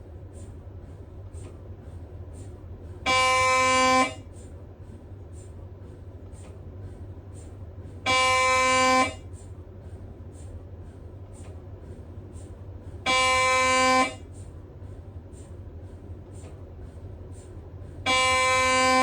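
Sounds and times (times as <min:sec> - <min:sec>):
steady low hum: 0:00.0 - 0:19.0
mri scanner buzzing: 0:18.1 - 0:19.0.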